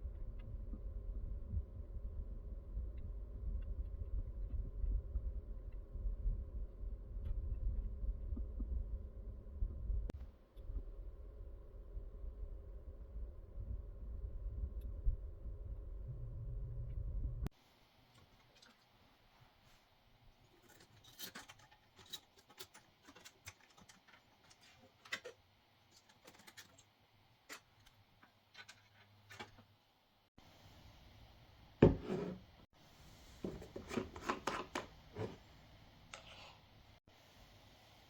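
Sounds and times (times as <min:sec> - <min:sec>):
rubbing and scratching: 0:18.3 - 0:29.8, 0:33.3 - 0:35.4
clicks and rattles: 0:20.5 - 0:29.7.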